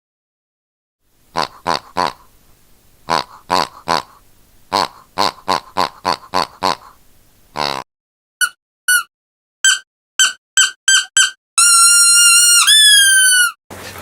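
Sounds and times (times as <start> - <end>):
squeaky dog toy squeaks: 8.4 - 13.6.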